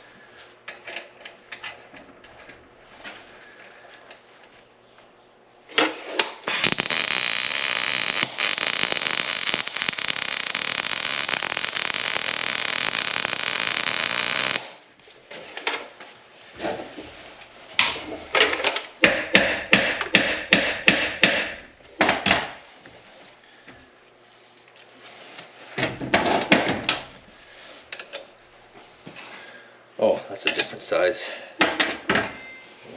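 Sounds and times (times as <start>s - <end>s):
welding arc crackling: 6.5s - 14.8s.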